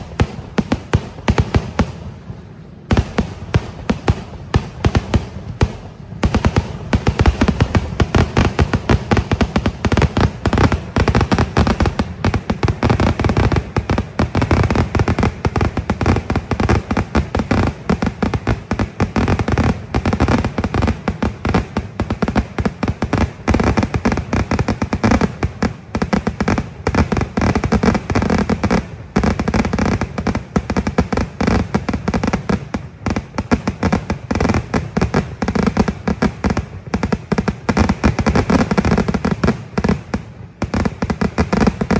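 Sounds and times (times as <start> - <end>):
firecracker bangs: 0.0 - 41.9.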